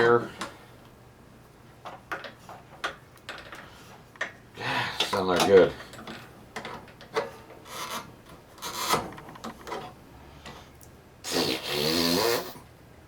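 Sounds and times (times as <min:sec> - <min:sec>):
rubber hose rubbing and scraping: 0:07.6 - 0:10.0.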